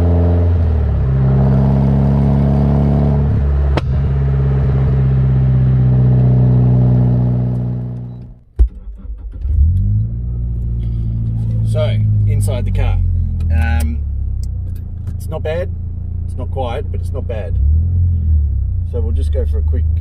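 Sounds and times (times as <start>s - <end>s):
car engine idling: 0.0s - 9.2s, 10.3s - 20.0s
sharp knock: 3.7s - 4.7s.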